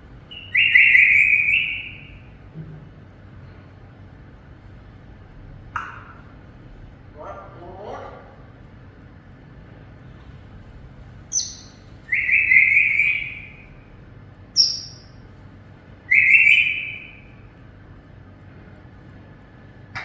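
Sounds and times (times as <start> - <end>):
parrot calling: 0.3 - 2.3, 11.3 - 13.8, 14.6 - 15.2, 16.1 - 17.4.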